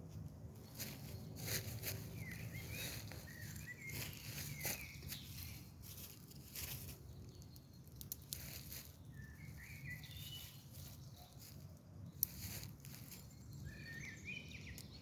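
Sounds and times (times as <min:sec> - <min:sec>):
bird chirping: 0:00.7 - 0:15.0
wood fire crackling and popping: 0:07.2 - 0:08.8.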